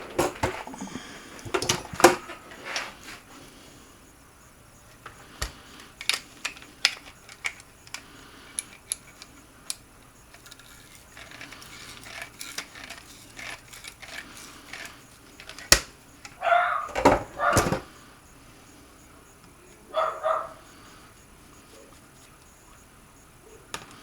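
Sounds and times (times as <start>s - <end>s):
small parts and tools clicking: 0.0s - 2.9s, 5.0s - 17.9s.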